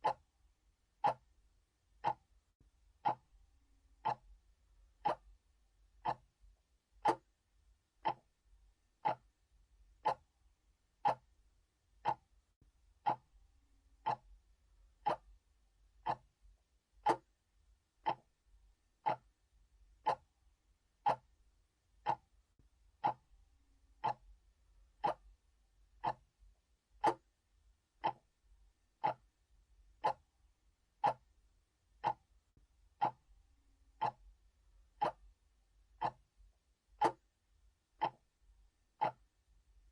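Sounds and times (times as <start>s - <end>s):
analog clock ticking: 0.0s - 0.3s, 1.0s - 1.3s, 2.0s - 2.3s, 3.0s - 3.4s, 4.0s - 5.4s, 6.0s - 6.4s, 7.0s - 7.4s, 8.0s - 8.4s, 9.0s - 9.4s, 10.0s - 10.3s, 11.0s - 11.3s, 12.0s - 12.3s, 13.0s - 13.3s, 14.0s - 15.4s, 16.0s - 16.4s, 17.0s - 17.4s, 18.0s - 18.4s, 19.0s - 19.4s, 20.0s - 20.4s, 21.0s - 21.4s, 22.0s - 22.4s, 23.0s - 23.3s, 24.0s - 25.4s, 26.0s - 26.4s, 27.0s - 27.3s, 28.0s - 28.4s, 29.0s - 30.3s, 30.9s - 31.4s, 32.0s - 32.3s, 33.0s - 37.4s, 38.0s - 39.4s.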